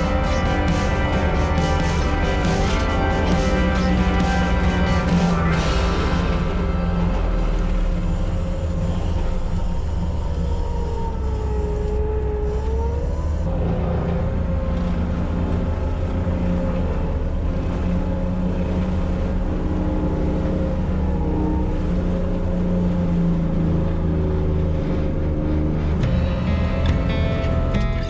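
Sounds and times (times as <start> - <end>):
diesel engine and mulcher drum whine: 0.0 - 11.8, 25.8 - 28.0.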